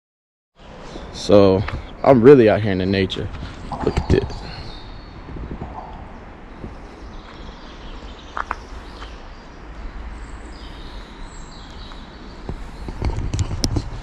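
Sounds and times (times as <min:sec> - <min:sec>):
steady low rumble: 0:00.6 - 0:14.0
bird chirps: 0:03.4 - 0:13.2.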